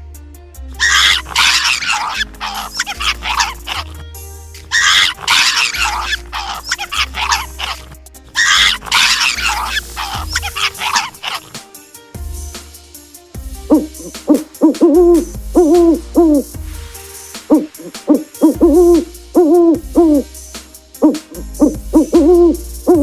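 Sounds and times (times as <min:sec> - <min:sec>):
owl hooting: 0:04.8 - 0:11.5.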